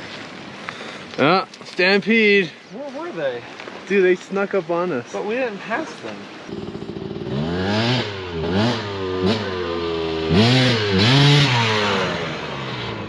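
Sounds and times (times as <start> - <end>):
atv engine idling and revving: 6.5 - 13.0.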